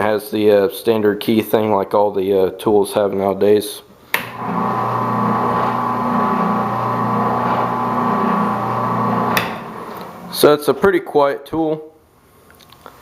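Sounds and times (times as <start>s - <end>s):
sander motor humming: 4.2s - 10.6s.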